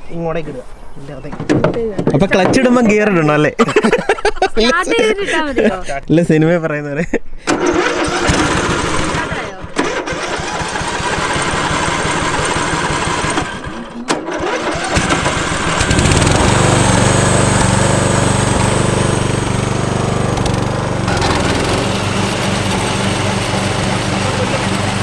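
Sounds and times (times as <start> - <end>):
riding lawn mower engine: 7.5 - 25.0.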